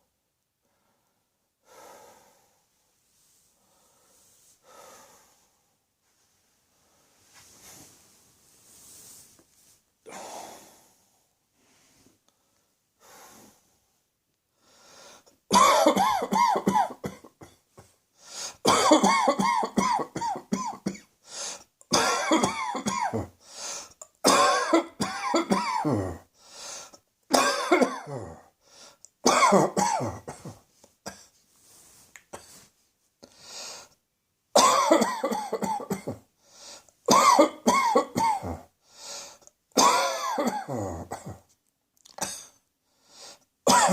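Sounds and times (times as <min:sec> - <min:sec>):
faint breathing: 0:00.6 - 0:08.0, 0:10.1 - 0:15.4, 0:18.2 - 0:18.6, 0:21.2 - 0:21.7, 0:23.4 - 0:24.0, 0:26.4 - 0:27.0, 0:28.6 - 0:29.1, 0:33.2 - 0:34.0, 0:36.4 - 0:37.0, 0:38.8 - 0:39.5, 0:42.8 - 0:43.5
person coughing hard: 0:15.5 - 0:17.6, 0:18.6 - 0:21.1, 0:21.9 - 0:23.4, 0:24.2 - 0:26.3, 0:27.3 - 0:28.5, 0:29.2 - 0:31.3, 0:34.6 - 0:36.2, 0:37.1 - 0:38.7, 0:39.8 - 0:41.5, 0:42.2 - 0:42.6, 0:43.7 - 0:43.9.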